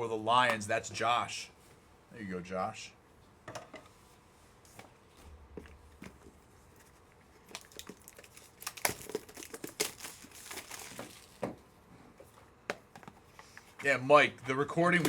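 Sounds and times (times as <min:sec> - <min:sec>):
plastic packaging crinkling: 0:07.3 - 0:11.5.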